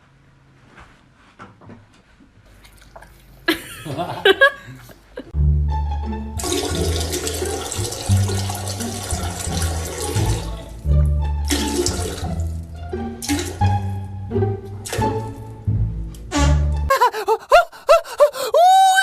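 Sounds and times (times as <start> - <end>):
music with deep bass line: 5.4 - 6.4, 9.6 - 11.5.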